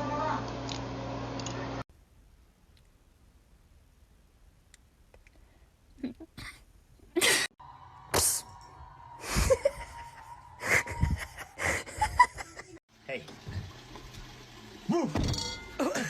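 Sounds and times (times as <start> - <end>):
person sneezing: 7.2 - 7.5.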